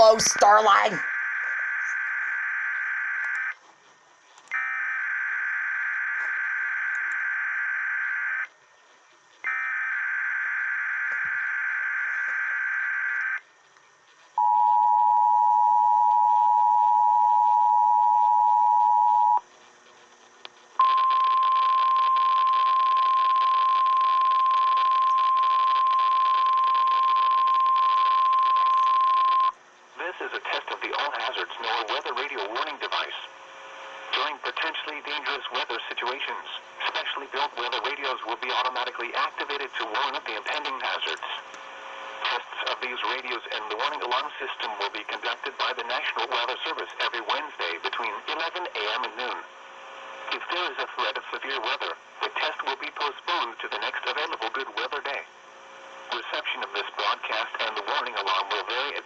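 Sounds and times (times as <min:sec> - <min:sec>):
radio hiss: 0:29.9 - 0:59.0.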